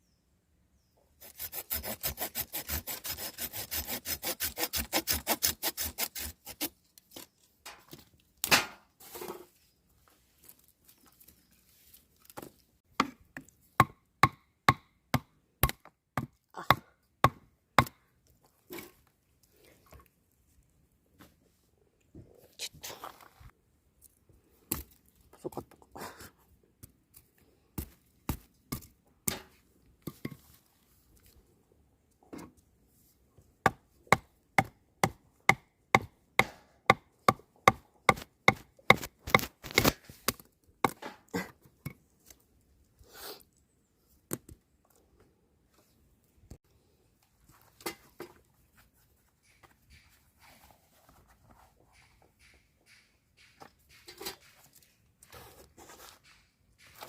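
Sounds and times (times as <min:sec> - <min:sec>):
sharp chopping strokes: 0:01.2 - 0:06.7, 0:37.7 - 0:40.0.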